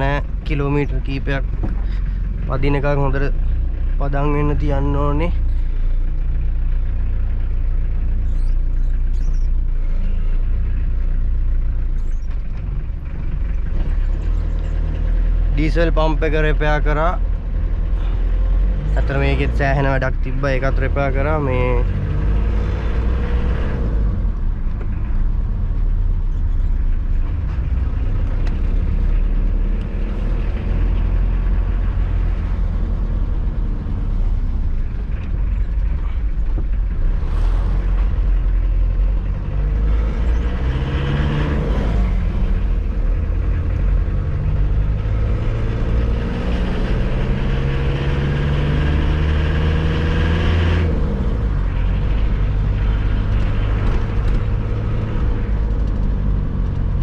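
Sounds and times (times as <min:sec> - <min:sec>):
diesel engine running: 0:00.0 - 0:57.0
road rumble: 0:00.0 - 0:57.0.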